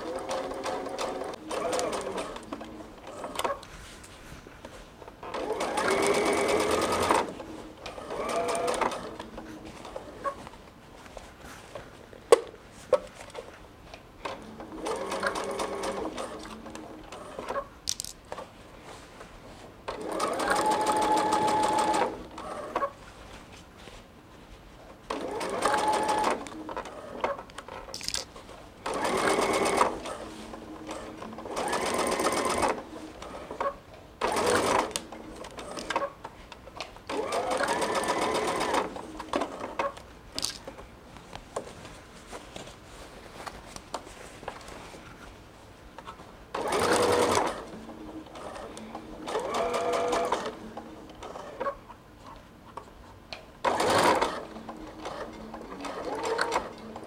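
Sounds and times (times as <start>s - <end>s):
sewing machine stitching: 0.0s - 3.6s, 5.2s - 9.3s, 14.2s - 17.6s, 19.9s - 22.8s, 25.1s - 27.4s, 28.8s - 36.1s, 37.1s - 39.9s, 46.5s - 50.6s, 53.6s - 57.0s.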